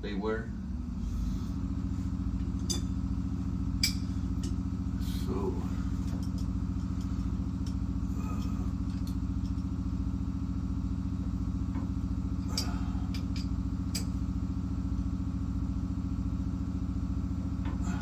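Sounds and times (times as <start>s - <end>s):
low machine hum: 0.0s - 18.0s
metal clicks of tools: 12.5s - 14.2s.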